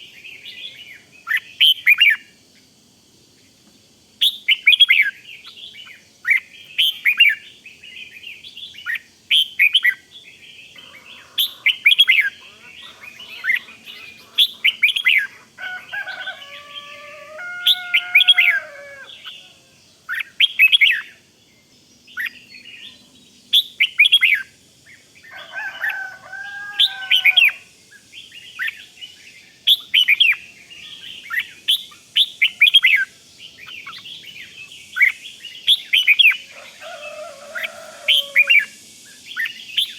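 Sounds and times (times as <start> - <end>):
bulbuls singing bubbling phrases: 10.6 - 21.2, 29.9 - 39.9
drawn-out bending bird call: 10.7 - 21.2, 25.2 - 27.8, 29.7 - 39.9.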